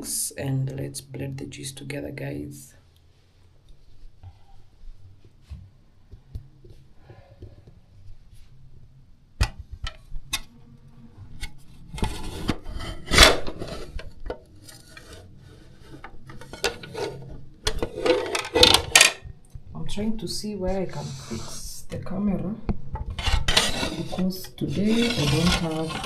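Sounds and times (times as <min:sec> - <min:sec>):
scraping and rubbing: 0:11.2 - 0:19.2, 0:20.7 - 0:21.8, 0:23.0 - 0:26.0.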